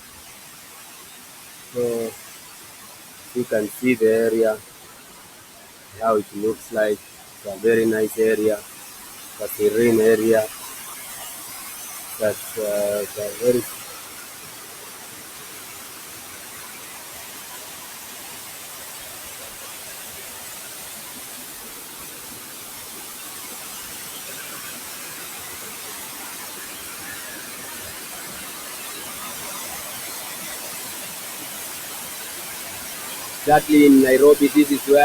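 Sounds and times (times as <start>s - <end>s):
water gushing: 0.0s - 35.0s.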